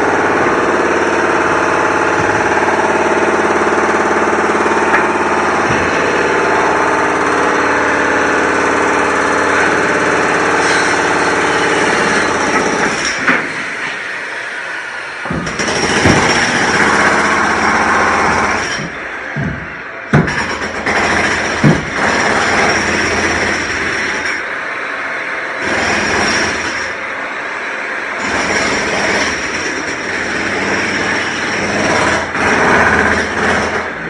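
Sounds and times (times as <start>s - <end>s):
construction machine engine: 0.0s - 22.0s
sharp knocks: 18.7s - 20.8s, 21.6s - 22.2s.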